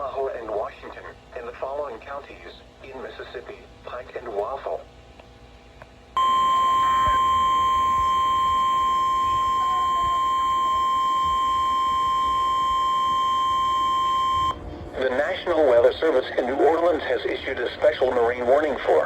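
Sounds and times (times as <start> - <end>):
steady high alarm tone: 6.2 - 14.6.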